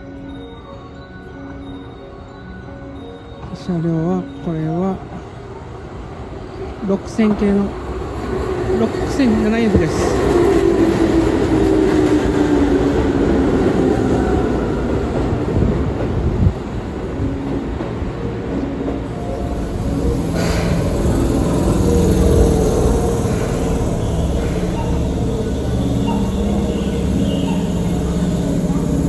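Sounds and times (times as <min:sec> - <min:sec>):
electric train braking: 0:19.0 - 0:29.0
traction motors whining: 0:19.0 - 0:29.0.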